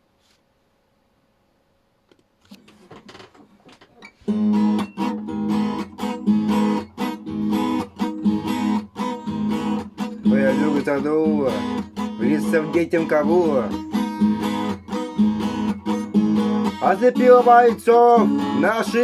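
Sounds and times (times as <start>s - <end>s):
acoustic guitar plucked notes: 4.1s - 19.0s
acoustic guitar strummed chords: 4.3s - 19.0s.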